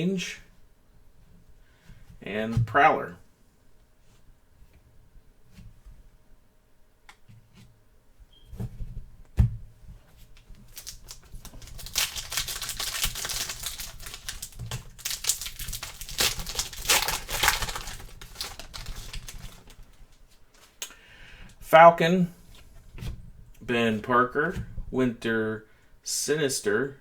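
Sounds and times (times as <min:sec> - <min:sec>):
wrapper tearing and crinkling: 0:10.4 - 0:20.7.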